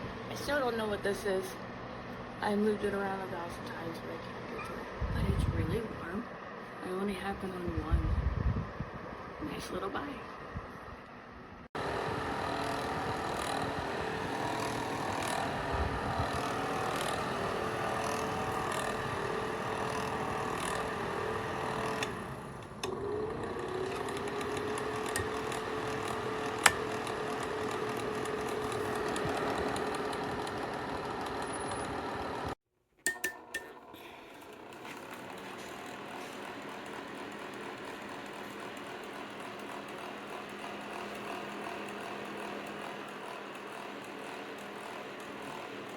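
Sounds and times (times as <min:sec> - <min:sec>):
space heater fan humming: 0:00.0 - 0:45.9
heater clicks: 0:12.4 - 0:33.8.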